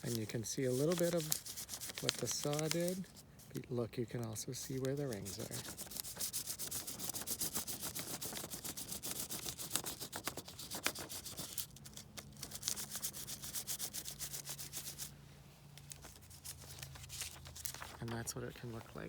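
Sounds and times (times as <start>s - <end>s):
crayon scratching on paper: 0.0s - 3.0s, 4.7s - 11.6s, 12.4s - 15.1s.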